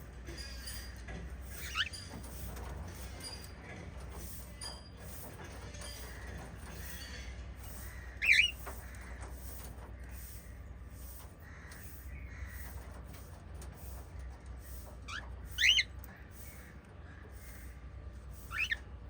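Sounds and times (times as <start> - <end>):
soft chirping: 1.5 - 2.1, 15.0 - 16.0, 18.3 - 19.0
parrot warbling chirps: 18.5 - 18.8.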